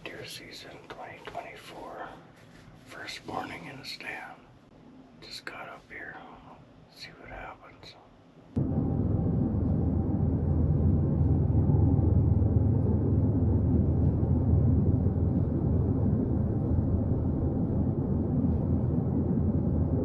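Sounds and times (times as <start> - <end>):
wind buffeting microphone: 8.6 - 20.0.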